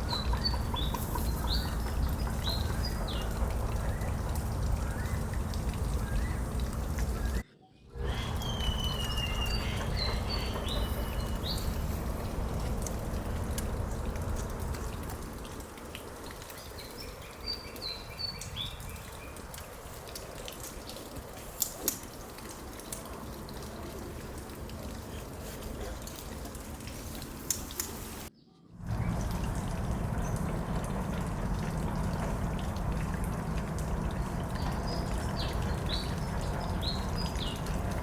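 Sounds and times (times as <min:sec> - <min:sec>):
bulbuls chirping: 0:00.0 - 0:07.4, 0:08.0 - 0:13.8, 0:33.6 - 0:38.0
outdoor background hiss: 0:00.0 - 0:38.0.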